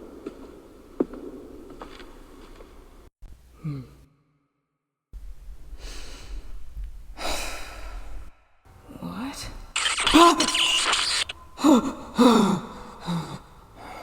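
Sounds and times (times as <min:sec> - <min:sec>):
person exhaling breathily: 0:11.6 - 0:14.0.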